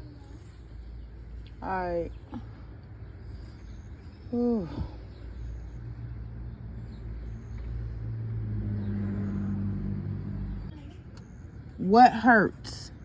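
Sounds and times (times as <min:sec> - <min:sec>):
engine humming: 0:00.0 - 0:12.6.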